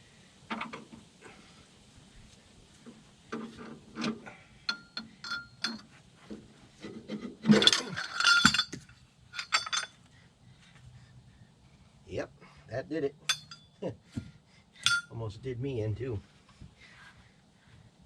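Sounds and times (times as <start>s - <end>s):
clatter of metal on metal: 3.4s - 5.9s, 6.8s - 10.0s, 13.3s - 13.7s, 14.8s - 15.1s
metal hand tools clinking: 4.7s - 5.9s, 7.5s - 10.0s, 13.2s - 13.8s, 14.8s - 15.2s.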